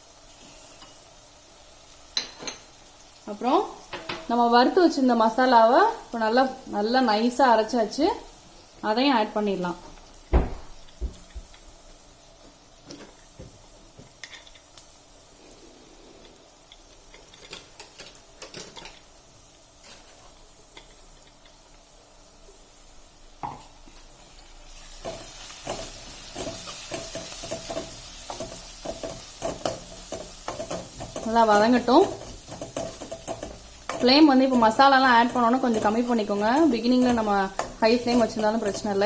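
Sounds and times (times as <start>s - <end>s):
onions sizzling in oil: 0.0s - 39.0s
spoon knocking and scraping pan: 2.2s - 2.7s, 3.9s - 4.4s, 25.0s - 39.0s.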